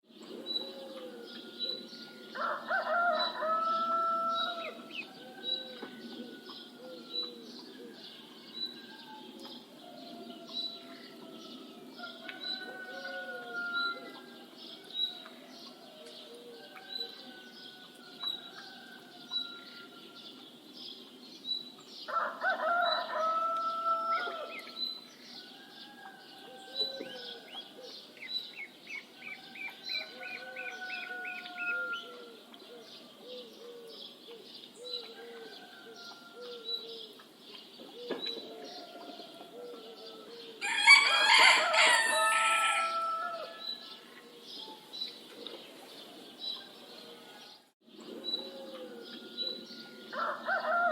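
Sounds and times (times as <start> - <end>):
rooster crowing: 0.9 - 9.3, 9.9 - 14.9, 22.1 - 24.6, 29.3 - 32.4, 38.7 - 44.0, 48.7 - 50.9.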